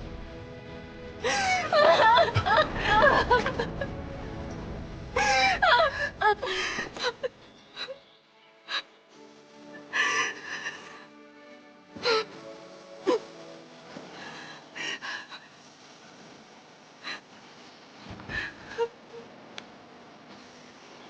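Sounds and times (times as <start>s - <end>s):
soft background music: 0.0s - 18.9s
woman sobbing and wailing: 1.2s - 4.1s, 5.1s - 8.0s, 13.0s - 13.3s, 18.3s - 19.3s.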